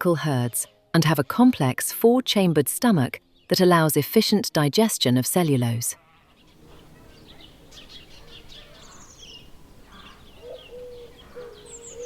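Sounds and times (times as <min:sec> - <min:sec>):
soft sustained music notes: 0:00.0 - 0:12.0
small birds chirping: 0:06.0 - 0:12.0.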